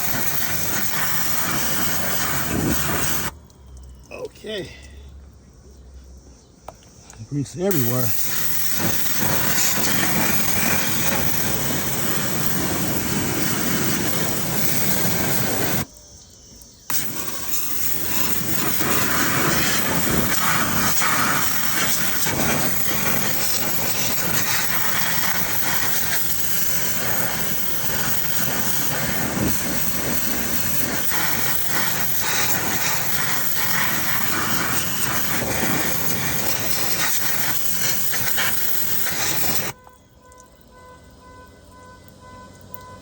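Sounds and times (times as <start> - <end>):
pressure washer spraying water: 0.0 - 3.4, 7.7 - 15.9, 16.9 - 39.8.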